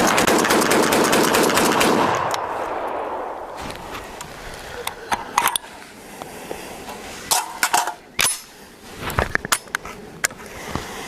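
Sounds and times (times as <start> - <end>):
shotgun firing: 0.0 - 3.9.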